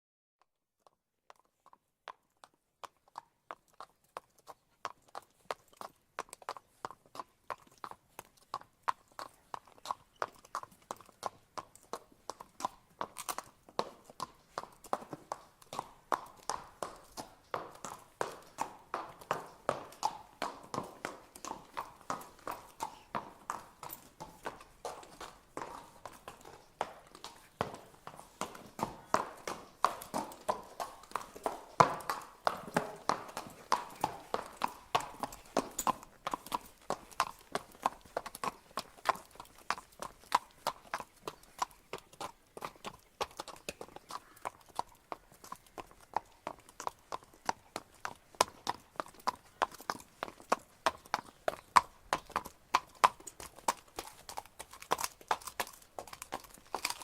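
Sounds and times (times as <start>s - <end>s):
horse hooves clip-clopping: 0.8s - 57.0s.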